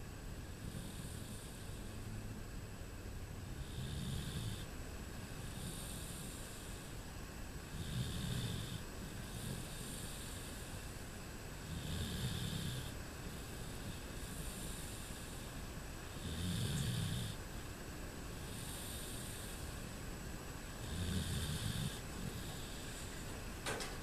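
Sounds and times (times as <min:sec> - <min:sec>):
soft breathy hiss: 0:00.0 - 0:24.0
dog snoring: 0:00.5 - 0:02.1, 0:03.4 - 0:04.7, 0:05.4 - 0:07.0, 0:07.6 - 0:10.8, 0:11.6 - 0:17.4, 0:18.4 - 0:19.7, 0:20.8 - 0:23.1.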